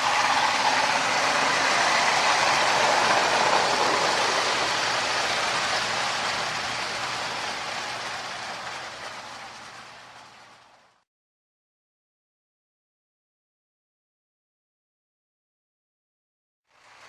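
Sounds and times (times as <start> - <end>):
toy train rumbling on metal track: 0.0 - 11.0.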